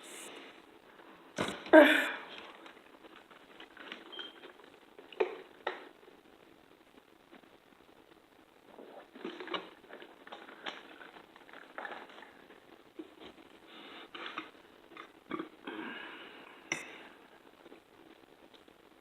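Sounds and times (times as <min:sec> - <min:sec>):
chewing and mouth smacks: 0:09.0 - 0:13.4.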